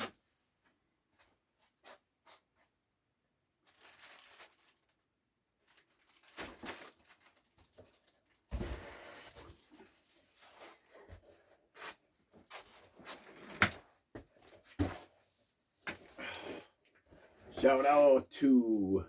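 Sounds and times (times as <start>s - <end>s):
packaging rustling and crinkling: 3.6s - 10.9s.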